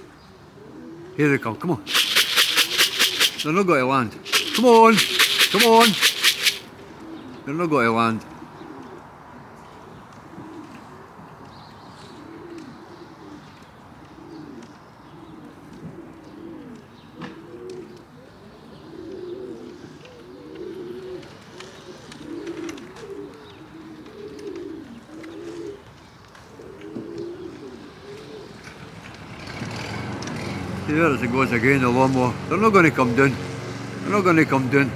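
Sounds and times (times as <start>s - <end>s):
pigeons cooing: 0.6s - 1.2s, 1.9s - 3.6s, 14.2s - 25.8s, 26.5s - 28.6s.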